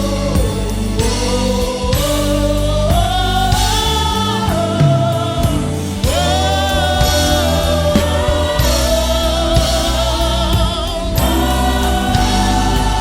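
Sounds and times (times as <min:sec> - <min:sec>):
band with steady bass: 0:00.0 - 0:13.0
gospel choir singing: 0:00.0 - 0:13.0.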